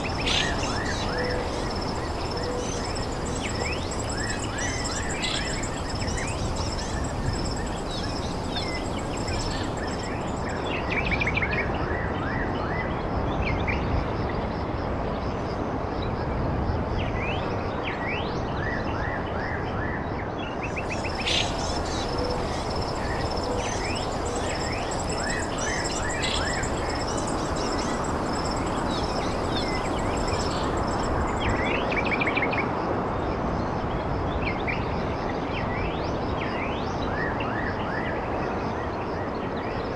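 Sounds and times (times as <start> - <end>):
birds chirping: 0.0 - 10.7, 20.8 - 31.8
background hiss: 0.0 - 10.8, 20.7 - 32.0
high-pitched whine: 0.0 - 10.9, 20.8 - 32.2.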